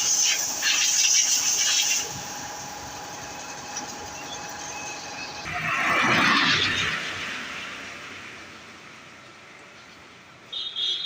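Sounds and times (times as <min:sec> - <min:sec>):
pressure washer jet spraying: 0:00.0 - 0:04.1
pressure washer machine hum: 0:00.0 - 0:05.5.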